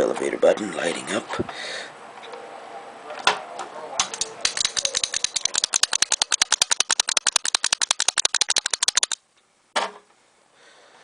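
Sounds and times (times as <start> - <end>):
rapid mechanical clicking: 4.0 - 9.2.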